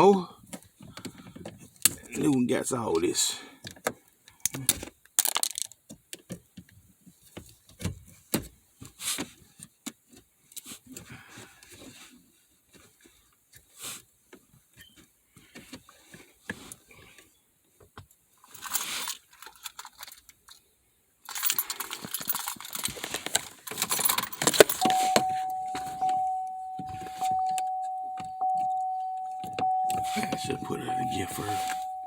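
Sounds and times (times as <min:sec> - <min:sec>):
keys jangling: 0:21.3 - 0:26.1
car warning chime dinging: 0:24.8 - 0:32.0.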